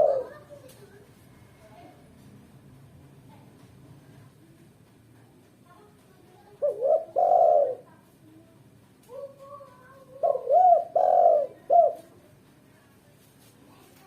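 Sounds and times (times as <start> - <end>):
dove cooing: 0.0 - 0.5, 6.6 - 7.9, 10.0 - 12.1.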